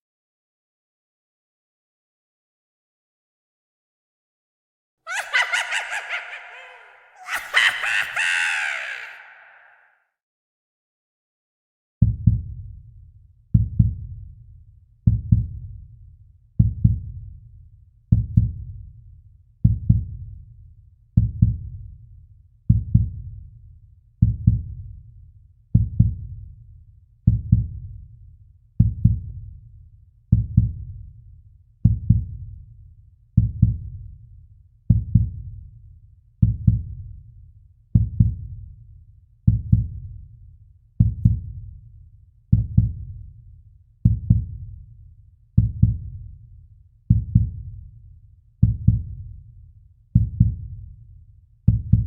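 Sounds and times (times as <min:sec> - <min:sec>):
heartbeat double thumps: 0:42.6 - 0:42.9, 0:44.1 - 0:44.5, 0:45.6 - 0:46.1, 0:47.1 - 0:47.5, 0:48.6 - 0:49.1.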